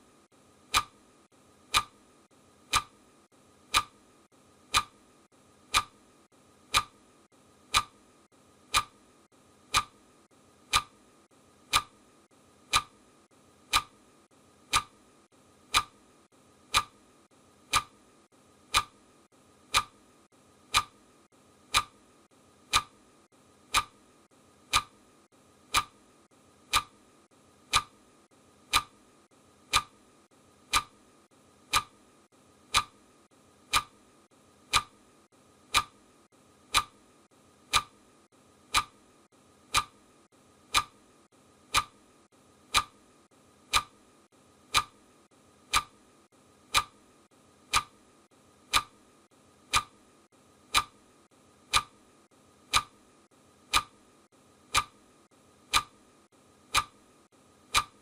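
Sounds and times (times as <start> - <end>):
clock ticking: 0.6 - 1.0, 1.6 - 2.0, 2.6 - 3.0, 3.6 - 4.0, 4.6 - 5.0, 5.6 - 6.0, 6.6 - 7.0, 7.6 - 8.0, 8.7 - 9.0, 9.7 - 10.0, 10.6 - 11.0, 11.6 - 12.0, 12.6 - 13.0, 13.6 - 14.0, 14.6 - 15.0, 15.7 - 16.0, 16.7 - 17.0, 17.6 - 18.0, 18.6 - 19.0, 19.6 - 20.0, 20.6 - 21.0, 21.7 - 22.0, 22.6 - 23.0, 23.6 - 24.0, 24.6 - 25.0, 25.7 - 26.0, 26.7 - 27.0, 27.7 - 28.0, 28.7 - 29.0, 29.7 - 30.0, 30.6 - 31.0, 31.6 - 32.0, 32.7 - 33.0, 33.6 - 34.0, 34.6 - 35.0, 35.7 - 36.1, 36.7 - 37.1, 37.7 - 38.0, 38.7 - 39.0, 39.7 - 40.0, 40.7 - 41.0, 41.7 - 42.0, 42.7 - 43.0, 43.6 - 44.0, 44.7 - 46.0, 46.7 - 47.0, 47.7 - 48.0, 48.7 - 49.0, 49.7 - 50.0, 50.7 - 51.0, 51.7 - 52.0, 52.7 - 53.0, 53.7 - 54.0, 54.7 - 55.0, 55.7 - 56.0, 56.7 - 57.0, 57.7 - 58.0.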